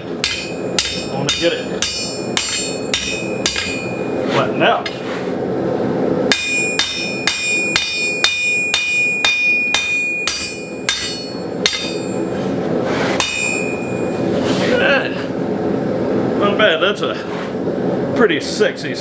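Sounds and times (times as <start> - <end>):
hammer striking hot steel on anvil: 0.0 - 4.2, 6.3 - 12.4, 13.2 - 14.3
steady background noise: 0.0 - 19.0.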